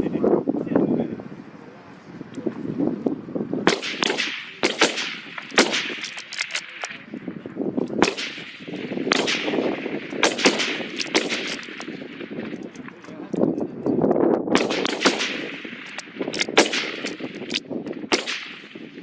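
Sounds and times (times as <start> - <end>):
rifle shots echoing: 3.7 - 7.3, 7.9 - 13.1, 14.6 - 19.0.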